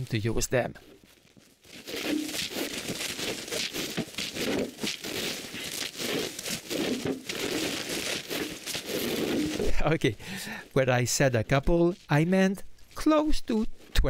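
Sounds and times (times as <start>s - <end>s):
rocks scraping: 0.8s - 10.2s
bags rustling and crinkling: 0.8s - 10.5s.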